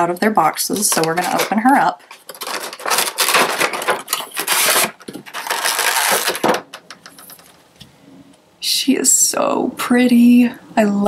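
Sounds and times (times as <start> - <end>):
cardboard and plastic rustling: 0.0 - 7.8.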